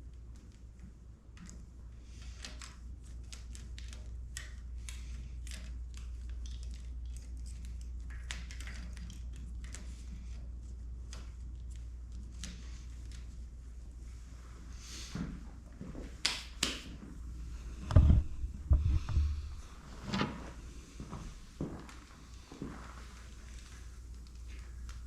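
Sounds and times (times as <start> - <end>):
steady low hum: 9.1 - 25.0
wiring clicks and rustles: 17.1 - 25.0.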